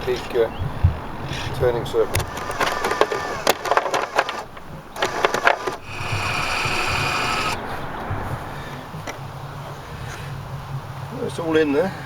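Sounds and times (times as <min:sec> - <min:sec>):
small electric motor whining: 0:02.1 - 0:07.9.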